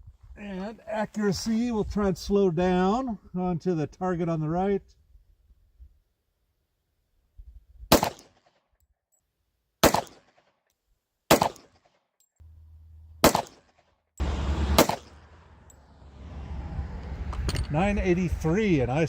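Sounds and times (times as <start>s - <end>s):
pistol shots: 7.9s - 8.4s, 9.8s - 10.4s, 11.3s - 11.8s, 13.2s - 13.8s, 14.7s - 15.2s.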